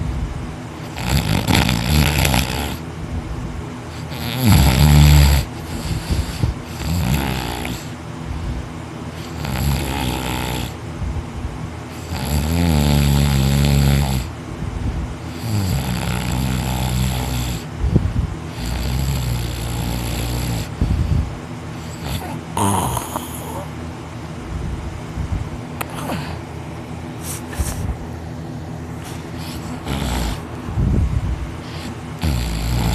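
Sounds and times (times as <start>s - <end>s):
person snoring heavily: 0.8s - 2.8s, 3.9s - 8.0s, 9.1s - 10.8s, 11.9s - 14.3s, 15.3s - 17.7s, 18.5s - 23.8s, 25.8s - 26.5s, 29.0s - 32.9s.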